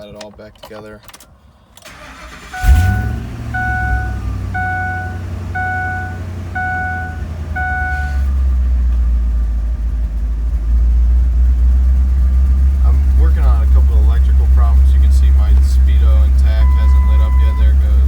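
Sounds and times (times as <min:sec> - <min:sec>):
truck engine starting and idling: 0:01.8 - 0:18.0
dashboard warning chime beeping: 0:01.9 - 0:08.3, 0:16.4 - 0:18.0.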